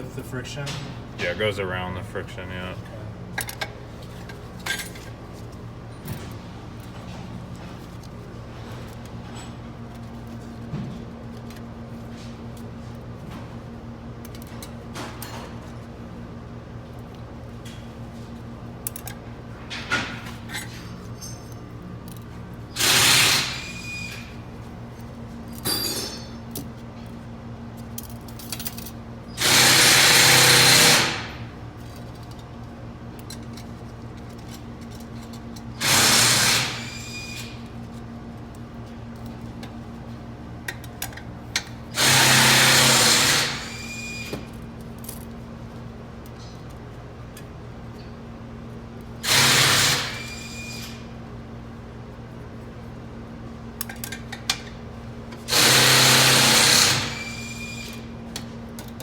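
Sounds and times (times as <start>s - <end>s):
power tool whining: 35.8s - 37.5s, 42.0s - 44.4s, 55.5s - 58.0s.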